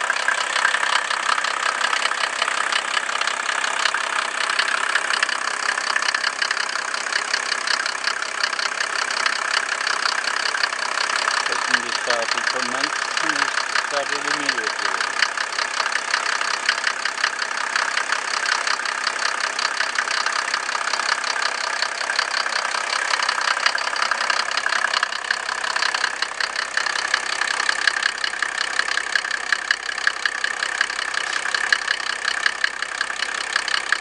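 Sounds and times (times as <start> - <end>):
diesel engine idling: 0.0 - 34.0.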